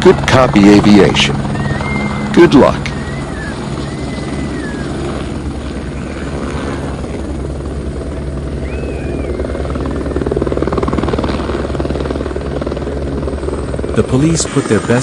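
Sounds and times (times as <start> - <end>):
helicopter rotor and engine: 0.0 - 15.0
faint high chirps: 2.9 - 5.2.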